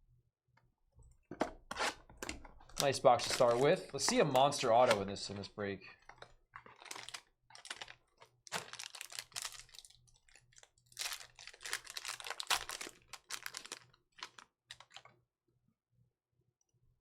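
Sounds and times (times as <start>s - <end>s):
cards and wrappers crinkling: 2.7s - 5.2s, 6.0s - 15.1s.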